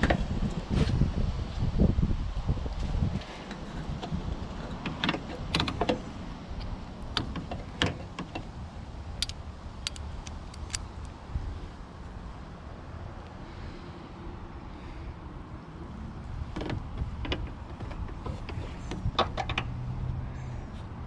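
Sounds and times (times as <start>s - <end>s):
hand tools clicking on metal: 9.2s - 10.9s.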